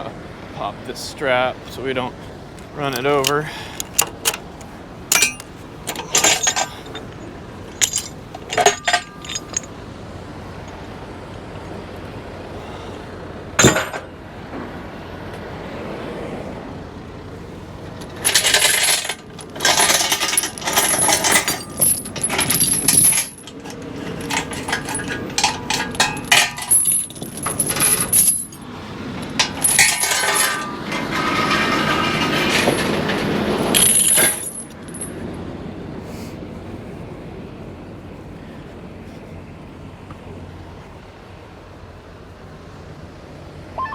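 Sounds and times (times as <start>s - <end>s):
metal chain rattling: 3.8s - 9.8s, 13.6s - 14.1s, 17.8s - 35.2s.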